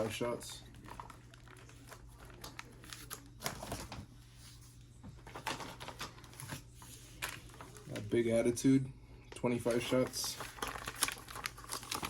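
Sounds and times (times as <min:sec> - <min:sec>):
wrapping rustling: 0:00.0 - 0:04.6, 0:09.5 - 0:12.0.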